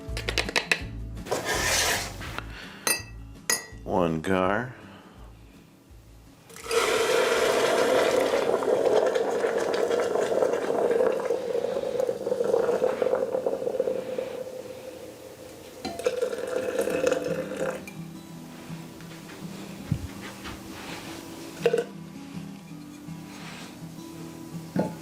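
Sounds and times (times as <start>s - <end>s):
water pouring into container: 6.5s - 14.8s, 16.0s - 17.8s.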